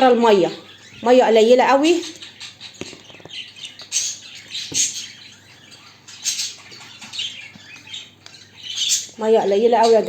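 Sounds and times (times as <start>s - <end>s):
budgerigars chirping: 0.0s - 10.0s.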